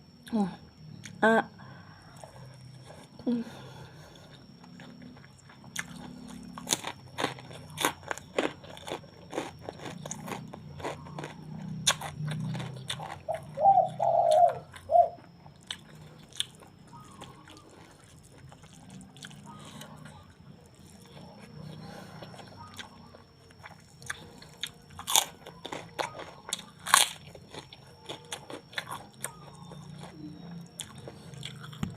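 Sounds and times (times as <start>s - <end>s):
crunching crisp crackers: 0.9s - 31.9s
soft chewing: 0.9s - 31.9s
wavering high-pitched call: 13.3s - 15.2s.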